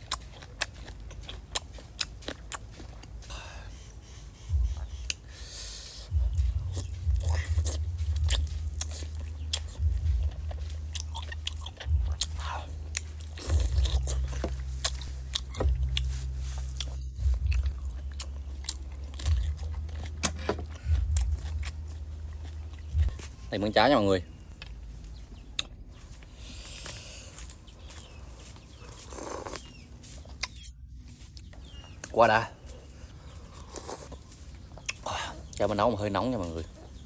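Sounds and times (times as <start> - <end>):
wet mouth sounds: 0.0 - 15.1, 17.7 - 23.9, 26.4 - 29.7, 31.6 - 37.0
low jaw thuds: 0.0 - 16.0, 17.2 - 24.5
chewing and crunching food: 0.0 - 37.0.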